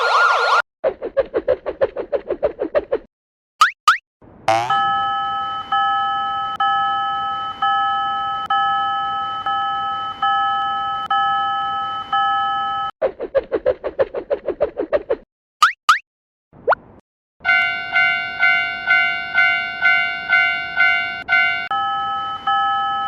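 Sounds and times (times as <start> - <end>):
pulsing alarm tone: 4.5 - 12.9, 17.4 - 23.0
railroad crossing warning bell: 4.5 - 12.9, 17.4 - 23.0.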